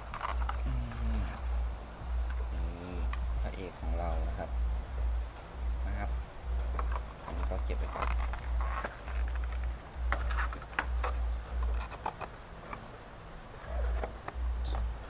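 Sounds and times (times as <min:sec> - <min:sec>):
plastic packaging clicks and taps: 0:06.7 - 0:12.8.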